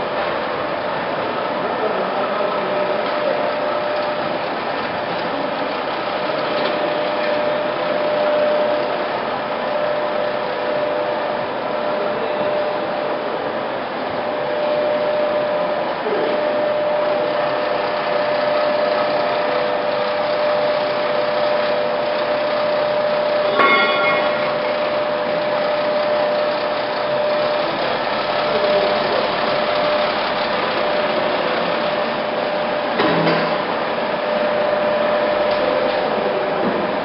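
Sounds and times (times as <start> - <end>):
lathe humming: 0.0 - 37.0
brief high-pitched sound: 23.5 - 25.4.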